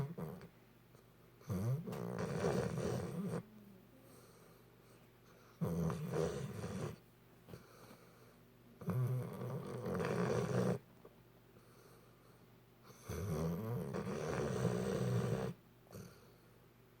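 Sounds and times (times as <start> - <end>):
dog snoring: 0.0 - 0.5, 1.4 - 3.6, 5.3 - 8.0, 8.8 - 10.8, 12.8 - 16.2.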